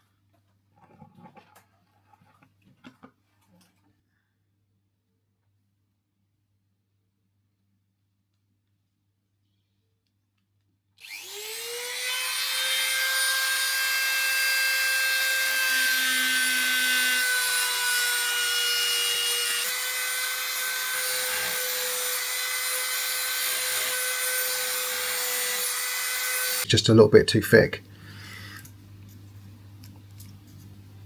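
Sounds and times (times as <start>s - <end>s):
rotary power tool grinding metal: 11.0s - 26.7s.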